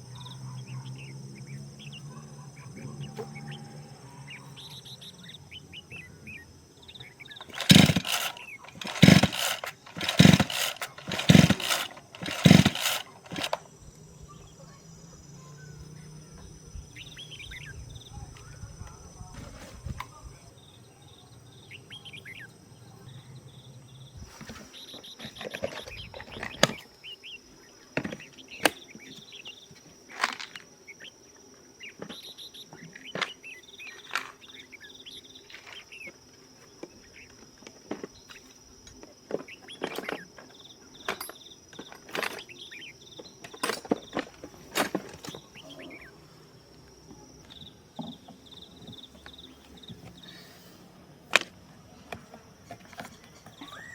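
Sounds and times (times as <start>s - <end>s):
insects trilling: 0.0s - 53.9s
clicks and knocks on chainsaw: 7.4s - 13.7s, 43.4s - 45.6s.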